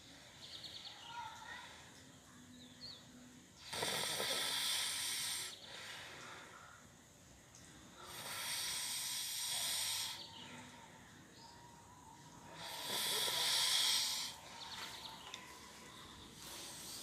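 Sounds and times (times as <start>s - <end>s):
person snoring: 3.6s - 5.6s, 8.0s - 10.3s, 12.6s - 14.4s
quiet breathing: 3.6s - 17.0s.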